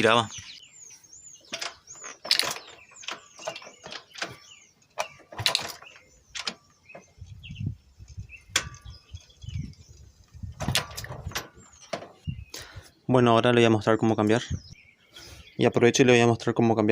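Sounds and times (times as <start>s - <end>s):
low rumbling: 0.0s - 12.8s
engine chain metallic clicks: 1.4s - 12.3s.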